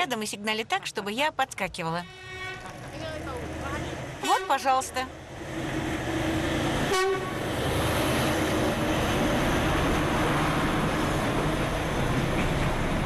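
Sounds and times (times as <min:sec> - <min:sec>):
train rumbling and clattering by: 0:00.0 - 0:13.0
train horn toot: 0:02.0 - 0:02.8, 0:06.8 - 0:07.5.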